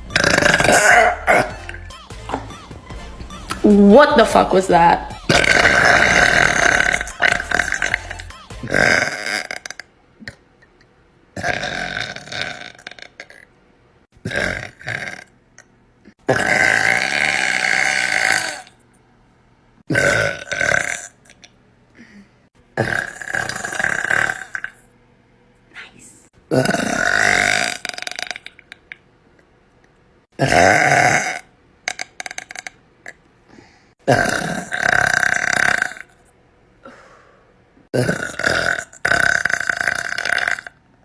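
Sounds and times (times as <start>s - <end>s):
woman burping: 0.0s - 2.7s, 5.2s - 10.8s, 19.9s - 21.4s, 22.8s - 24.8s, 26.5s - 28.4s, 30.4s - 33.2s, 34.0s - 36.2s, 37.9s - 40.8s.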